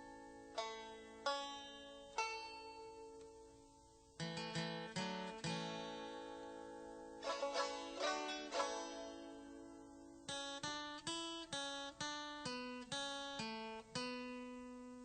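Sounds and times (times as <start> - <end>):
plucked acoustic string instrument: 0.0 - 15.0.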